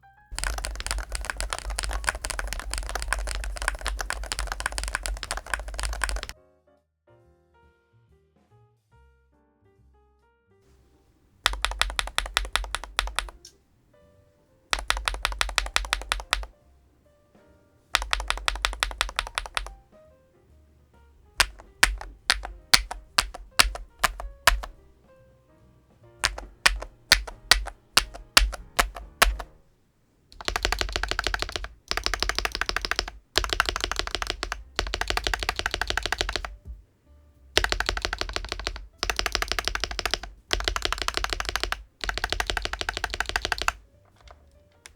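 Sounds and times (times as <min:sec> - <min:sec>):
typing on a keyboard: 0:00.3 - 0:06.4, 0:11.4 - 0:13.5, 0:14.7 - 0:16.5, 0:17.9 - 0:19.9, 0:21.3 - 0:24.8, 0:26.2 - 0:29.6, 0:30.4 - 0:36.8, 0:37.6 - 0:44.9.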